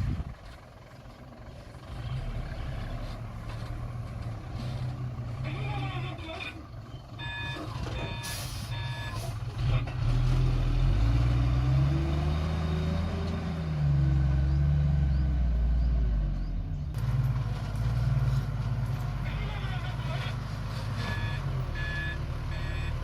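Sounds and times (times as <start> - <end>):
construction machine engine revving: 0.0 - 23.0
reversing alarm beeps: 7.2 - 9.2, 21.0 - 23.0.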